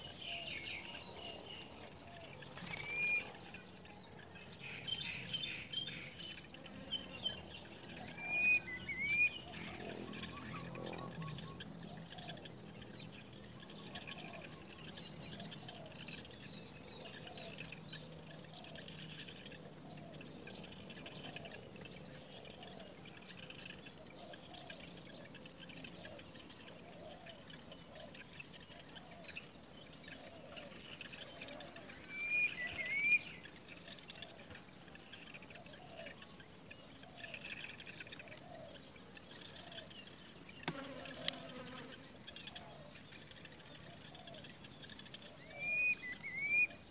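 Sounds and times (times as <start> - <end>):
upward-sweeping whistled bird calls: 0.0 - 12.5, 22.4 - 38.8, 41.5 - 46.9
birds calling: 0.0 - 46.9
faint chirps: 0.0 - 46.9
steady outdoor hiss: 0.0 - 46.9.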